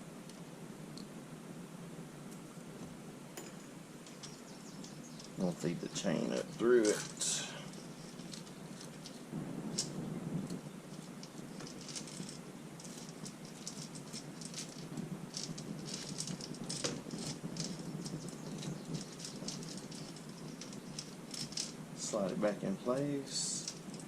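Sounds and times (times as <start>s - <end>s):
metal chain rattling: 3.4s - 5.4s, 6.0s - 22.4s, 23.5s - 24.0s.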